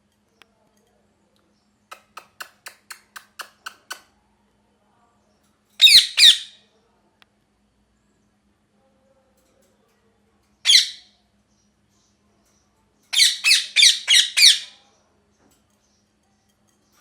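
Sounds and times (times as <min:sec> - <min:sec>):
parrot squawking: 0:05.8 - 0:06.6, 0:10.7 - 0:11.0, 0:13.1 - 0:14.8.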